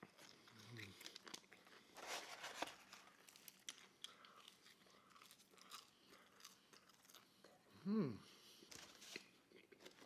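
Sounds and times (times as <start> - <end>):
chewing pizza: 0.0 - 2.0, 2.7 - 10.0.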